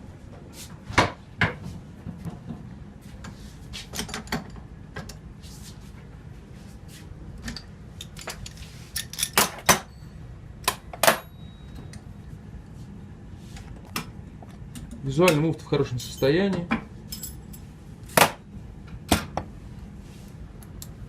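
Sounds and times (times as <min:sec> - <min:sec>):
metal tools clicking and clinking: 0:07.5 - 0:10.0, 0:15.3 - 0:16.4, 0:17.1 - 0:17.6.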